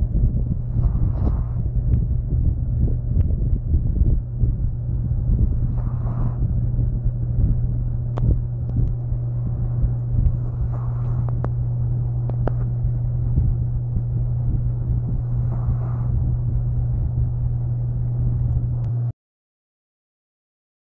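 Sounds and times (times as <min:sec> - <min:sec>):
steady low hum: 0:00.0 - 0:19.1
dog snoring softly: 0:00.5 - 0:02.0, 0:05.2 - 0:06.8, 0:10.1 - 0:11.6, 0:14.9 - 0:16.4.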